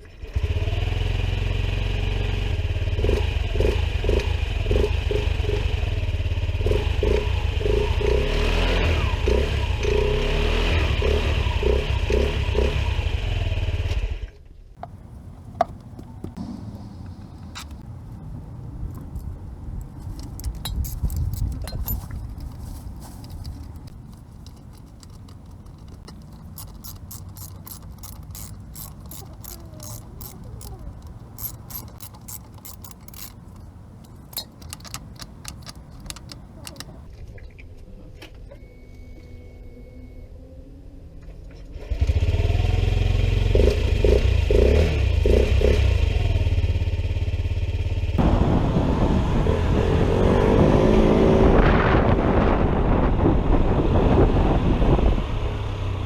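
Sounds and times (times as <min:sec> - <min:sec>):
metallic clicking and jangling: 0:14.8 - 0:37.1
rapid clicks: 0:14.8 - 0:37.1
scooter engine running: 0:14.8 - 0:37.1.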